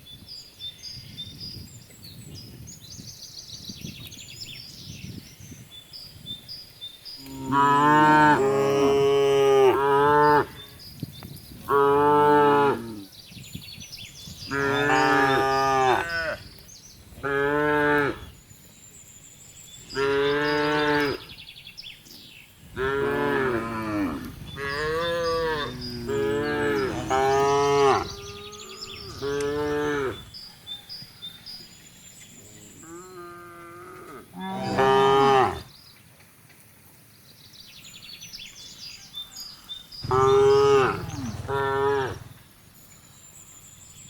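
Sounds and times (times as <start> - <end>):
cattle mooing: 22.8 - 30.2, 32.8 - 35.6, 40.0 - 42.3.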